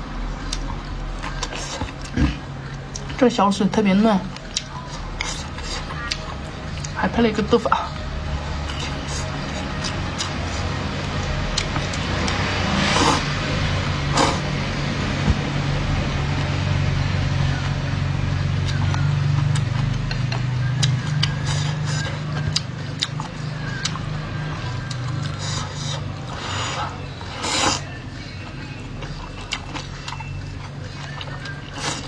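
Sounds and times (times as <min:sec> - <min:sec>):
steady low hum: 0:00.0 - 0:32.0
chewing: 0:00.1 - 0:32.0
slurping noodles: 0:08.7 - 0:15.4, 0:25.1 - 0:28.0, 0:31.0 - 0:32.0.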